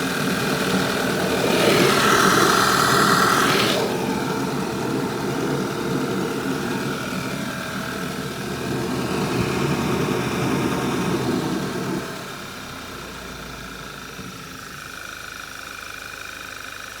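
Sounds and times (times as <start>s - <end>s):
rushing air-flow noise: 0.0s - 14.8s
steady engine whine: 0.0s - 16.0s
car engine idling: 0.0s - 17.0s.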